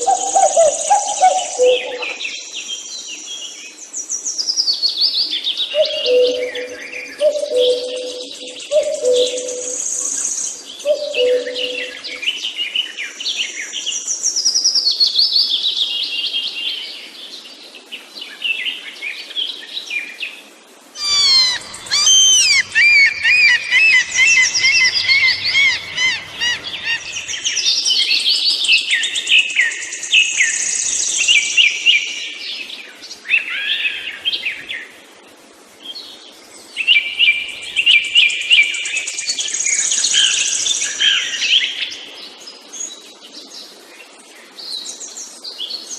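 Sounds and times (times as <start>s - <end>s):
songbirds singing: 0.0s - 14.1s, 21.0s - 35.0s.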